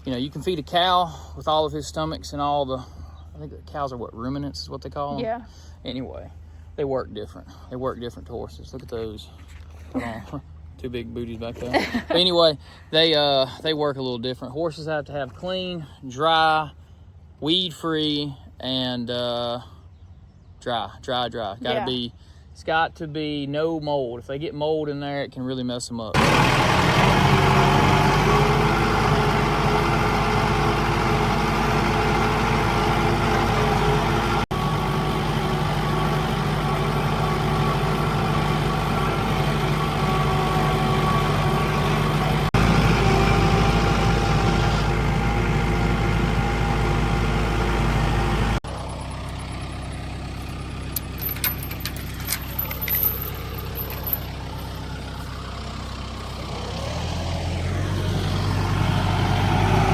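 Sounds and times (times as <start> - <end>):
tractor engine running: 26.2 - 59.9.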